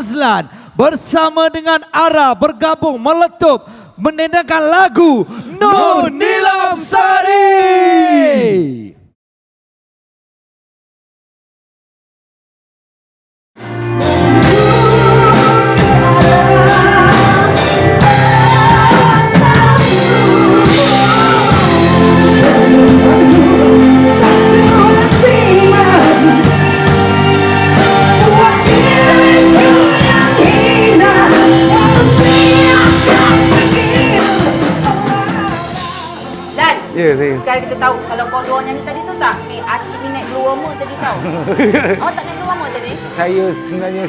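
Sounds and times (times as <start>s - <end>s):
duet of singers: 5.4s - 8.9s, 14.0s - 36.6s
rock band with guitar: 13.6s - 36.9s.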